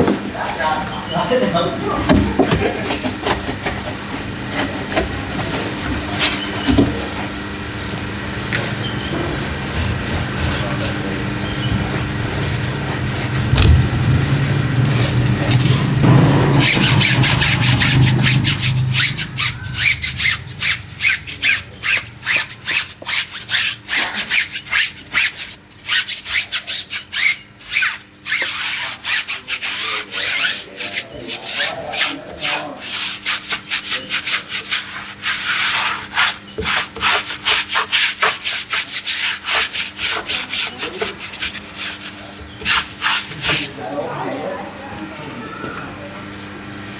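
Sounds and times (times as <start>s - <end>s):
stiff brush scrubbing: 1.0s - 7.6s, 8.5s - 44.3s
low hum: 12.8s - 23.0s.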